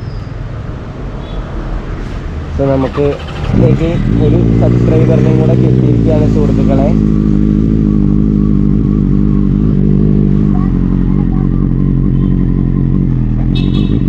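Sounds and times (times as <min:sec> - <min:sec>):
motorcycle engine running: 0:02.9 - 0:14.0.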